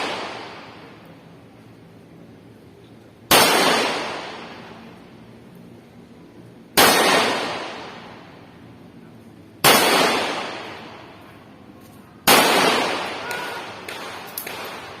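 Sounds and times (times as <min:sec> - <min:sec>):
pistol shots echoing: 0:00.0 - 0:01.0, 0:03.3 - 0:04.8, 0:06.8 - 0:08.2, 0:09.6 - 0:11.2, 0:12.2 - 0:15.0.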